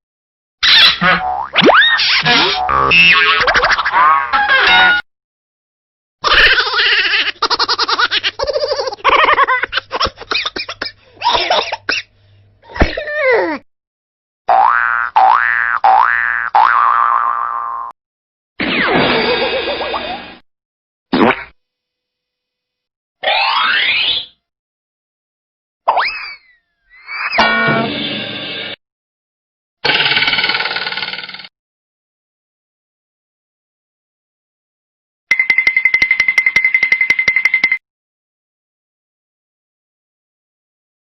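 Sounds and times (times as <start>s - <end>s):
cartoon rising pitch sound effect: 0.6s - 3.4s
rapid pulsing laughter: 3.0s - 4.0s, 6.2s - 11.4s
falling squeal: 26.0s - 27.4s.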